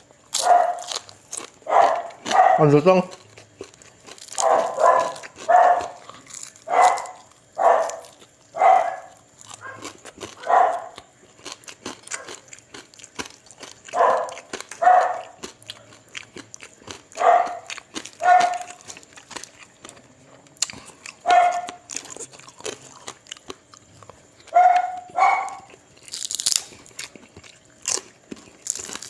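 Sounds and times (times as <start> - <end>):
dog barking: 0.4 - 1.0, 1.6 - 2.8, 4.3 - 11.0, 12.1 - 12.4, 13.9 - 15.5, 17.2 - 18.9, 21.2 - 21.9, 24.5 - 25.8.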